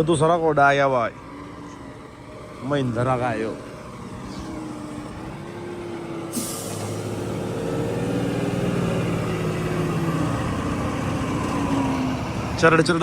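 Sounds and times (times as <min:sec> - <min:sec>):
tractor diesel engine running: 0:00.0 - 0:13.0
sharp hiss of released air: 0:06.3 - 0:07.0.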